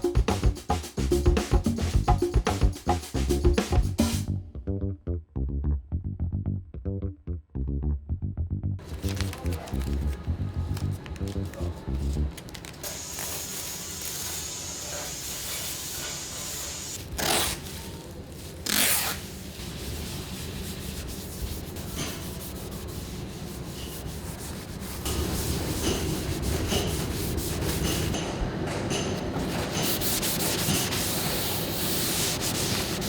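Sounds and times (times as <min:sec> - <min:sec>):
sanding car body panel: 0:13.0 - 0:28.2, 0:29.4 - 0:33.0.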